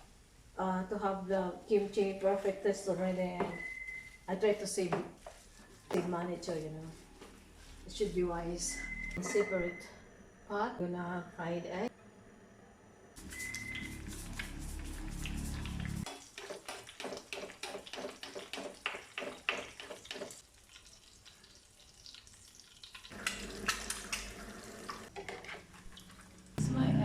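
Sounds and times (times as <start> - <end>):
eggs sizzling in hot oil: 13.2 - 26.6.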